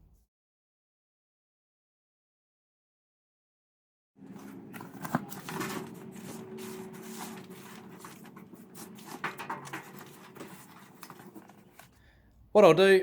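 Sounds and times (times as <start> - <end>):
rustling handling noises: 4.2 - 12.5.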